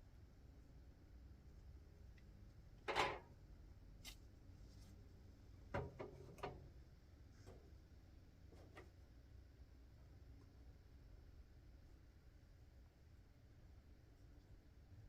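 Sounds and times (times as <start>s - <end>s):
objects knocking and clattering: 2.9s - 3.3s.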